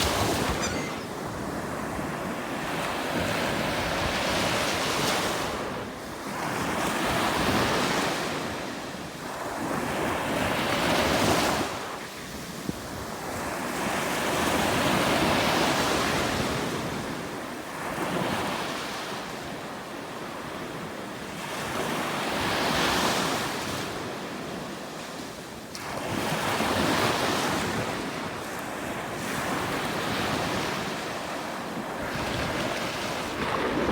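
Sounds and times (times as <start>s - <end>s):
ocean waves breaking: 0.0s - 5.7s, 31.9s - 33.9s.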